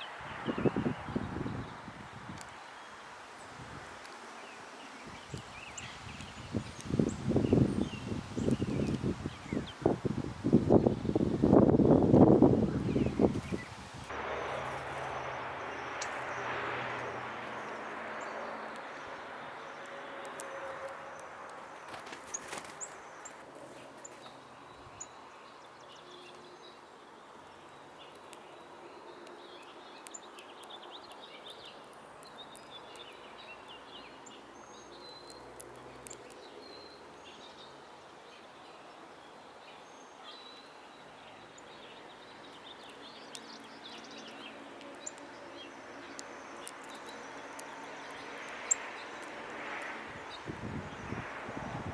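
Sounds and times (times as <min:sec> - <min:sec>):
small birds chirping: 0:00.0 - 0:51.9
rushing noise: 0:13.8 - 0:18.2
sharp clicks: 0:35.1 - 0:36.6, 0:46.0 - 0:49.9.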